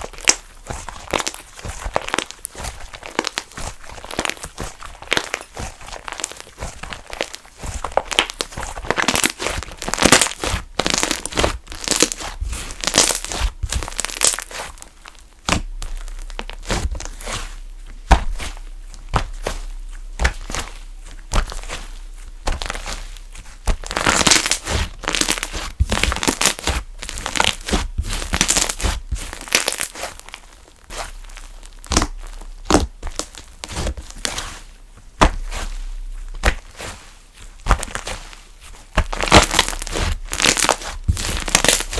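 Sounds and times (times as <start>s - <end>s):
slime squished by hand: 0.0s - 41.9s.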